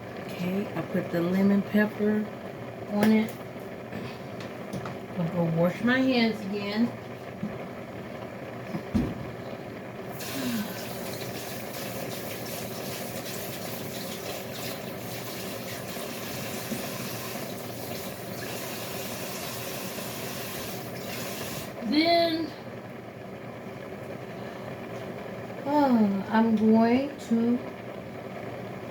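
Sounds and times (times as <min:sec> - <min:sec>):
tap water running into sink: 0:10.2 - 0:21.8.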